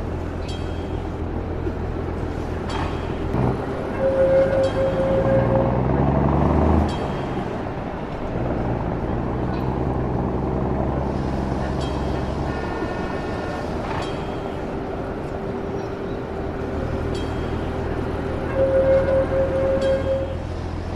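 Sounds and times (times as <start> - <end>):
motor vehicle engines running: 0.0 - 20.9
brief higher tone: 18.4 - 20.5.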